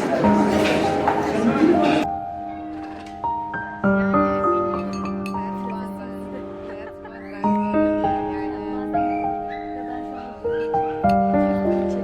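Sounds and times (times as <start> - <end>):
gentle instrumental music: 0.0 - 12.0.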